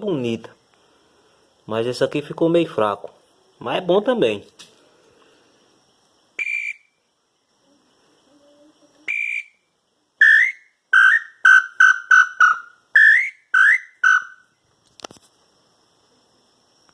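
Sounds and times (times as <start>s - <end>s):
wooden bird-call whistle notes: 6.4s - 7.0s, 9.1s - 14.6s.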